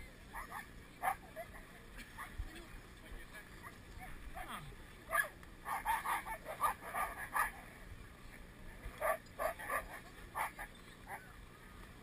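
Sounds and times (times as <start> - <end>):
sled dogs barking and yelping: 0.3 - 1.5, 4.0 - 7.6, 9.0 - 11.3.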